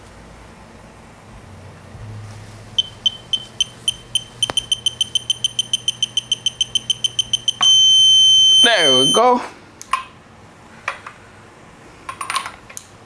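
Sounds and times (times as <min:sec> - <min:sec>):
wrench beeping: 0:02.8 - 0:09.3.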